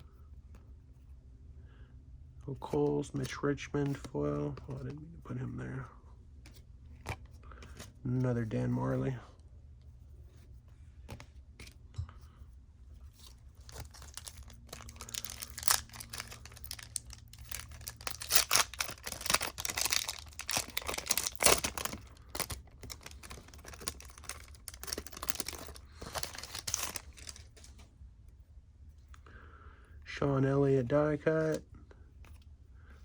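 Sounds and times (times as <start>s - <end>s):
cards rustling and clicking: 2.5s - 5.8s, 6.4s - 9.2s, 10.1s - 12.3s, 12.9s - 27.9s, 31.2s - 33.0s
foil wrapper tearing and crinkling: 13.6s - 27.5s.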